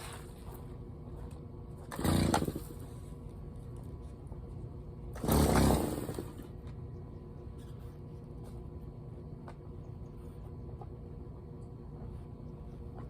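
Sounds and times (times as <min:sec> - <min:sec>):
steady low hum: 0:00.0 - 0:13.0
small engine revving: 0:01.9 - 0:02.9, 0:05.1 - 0:06.5.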